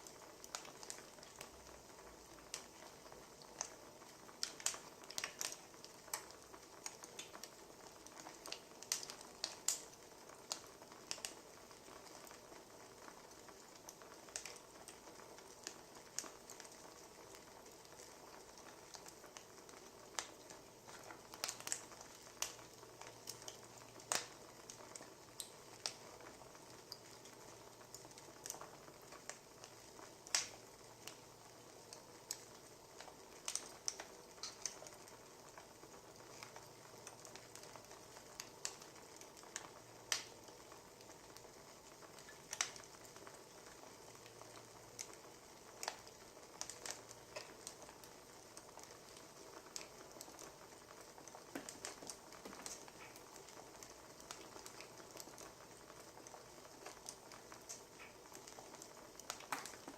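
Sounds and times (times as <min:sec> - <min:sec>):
faint steady hiss: 0:00.0 - 0:59.9
wood fire crackling: 0:00.0 - 0:59.9.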